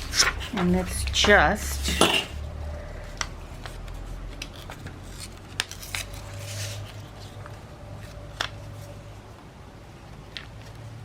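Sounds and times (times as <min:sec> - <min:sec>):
paper rustle: 0:02.9 - 0:09.3.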